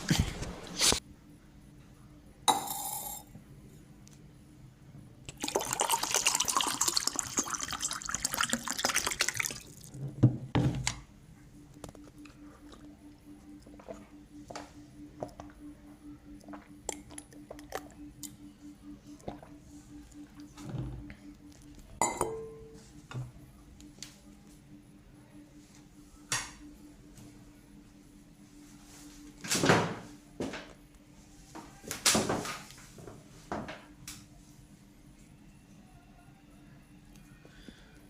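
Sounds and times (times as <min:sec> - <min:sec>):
low steady hum: 0:00.0 - 0:31.9
water running: 0:05.3 - 0:10.0.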